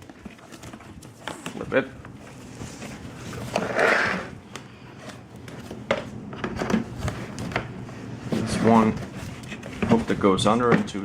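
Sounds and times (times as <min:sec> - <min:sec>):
plastic parts scraping: 0:02.6 - 0:07.7.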